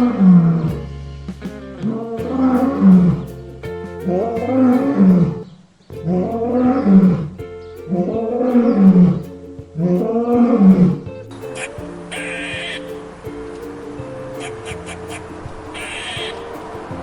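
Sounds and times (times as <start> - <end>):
background music: 0.0 - 17.0
animal calling: 9.8 - 17.0.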